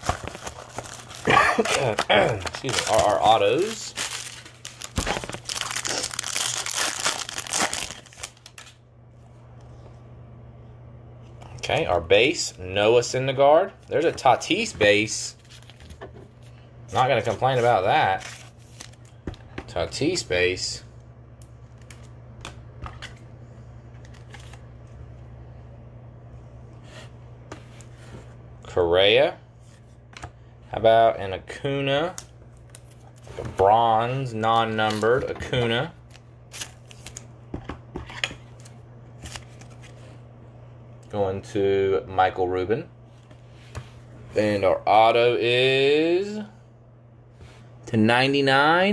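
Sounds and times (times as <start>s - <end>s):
cards clicking and rustling: 0.0s - 8.7s
plastic wrapping crinkling and tearing: 0.0s - 8.8s
steady low hum: 0.0s - 48.9s.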